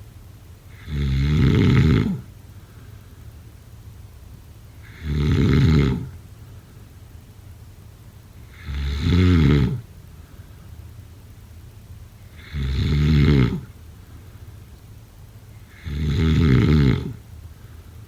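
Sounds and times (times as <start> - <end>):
person snoring: 4.8 - 6.1, 12.4 - 13.7, 15.7 - 17.2.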